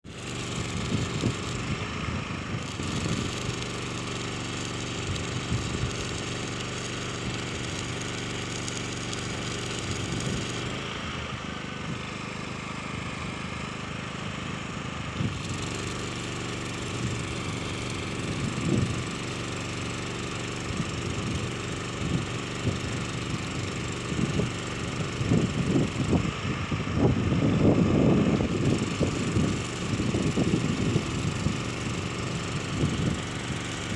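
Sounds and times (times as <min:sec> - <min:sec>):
small engine running: 0:00.0 - 0:33.9.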